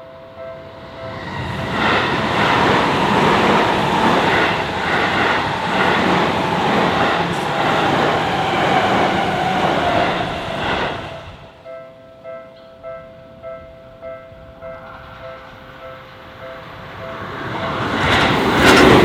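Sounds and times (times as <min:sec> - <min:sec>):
train wheels rushing on rails: 0:00.6 - 0:11.6, 0:15.0 - 0:19.0.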